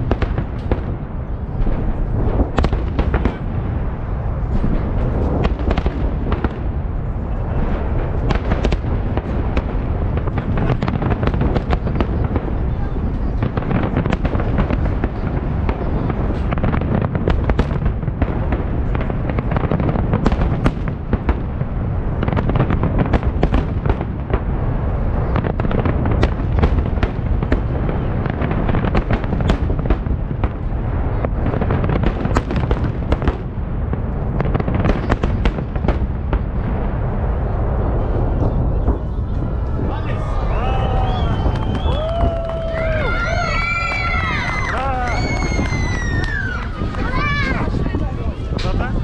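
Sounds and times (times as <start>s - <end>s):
deep fireworks booming: 0.0s - 49.0s
fireworks crackling bangs: 0.0s - 49.0s.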